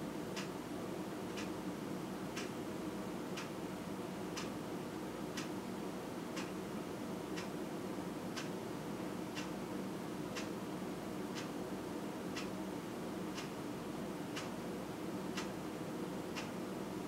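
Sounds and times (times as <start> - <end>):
low background hum: 0.0 - 17.0
clock ticking: 1.3 - 1.5, 13.3 - 13.5.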